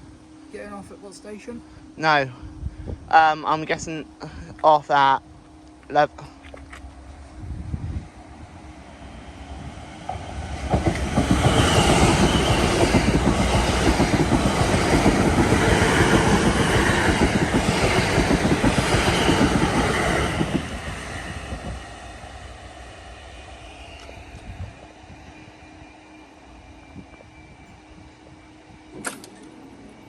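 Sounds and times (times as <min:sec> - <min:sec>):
train wheels rattling on rails: 0:09.0 - 0:22.9.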